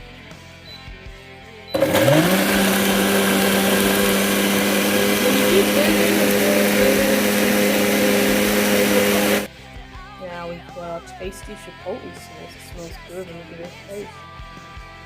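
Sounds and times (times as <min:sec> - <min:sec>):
electric blender running: 0:01.8 - 0:09.5.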